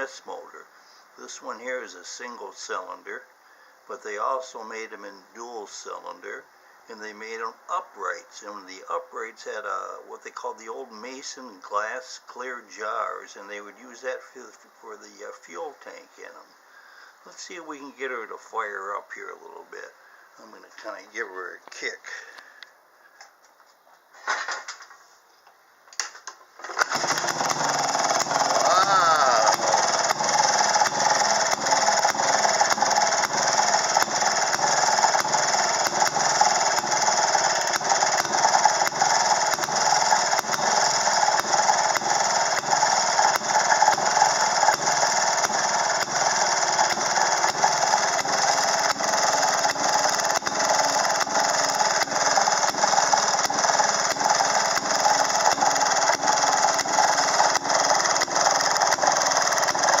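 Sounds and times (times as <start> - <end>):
two-stroke engine running: 26.6 - 60.0.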